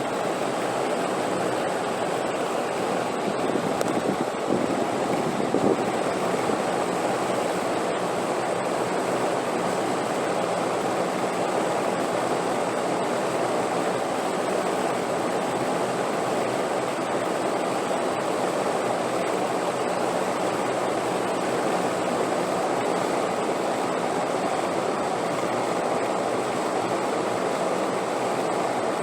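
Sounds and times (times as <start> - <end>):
steady wind rushing: 3.2 - 6.7.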